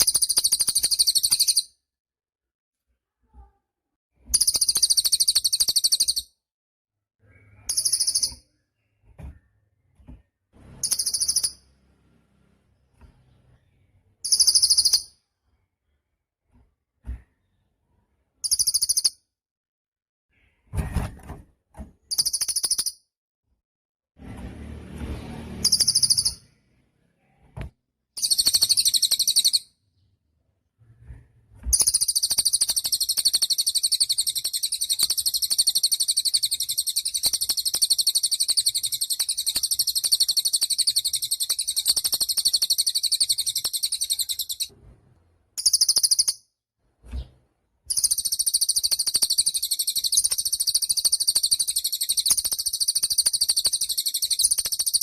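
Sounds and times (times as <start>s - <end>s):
songbird chattering song: 4.4s - 6.3s, 7.3s - 8.6s, 10.8s - 11.6s, 13.2s - 15.1s, 18.4s - 19.1s, 25.6s - 26.4s, 28.2s - 29.7s, 31.7s - 44.7s, 45.6s - 46.4s, 47.9s - 55.0s.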